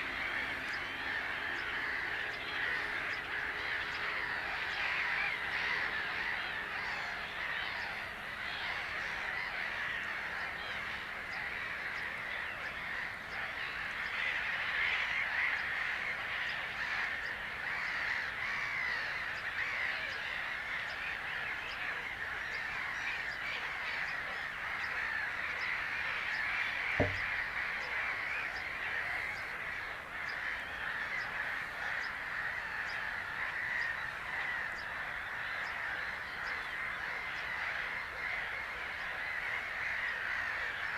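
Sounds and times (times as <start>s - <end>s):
dull thump: 27.0s - 27.3s.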